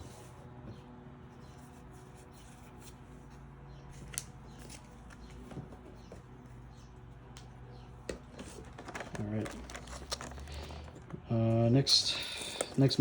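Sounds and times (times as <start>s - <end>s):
low room hum: 0.0s - 13.0s
cards and packaging rustling: 3.9s - 6.0s, 8.0s - 13.0s.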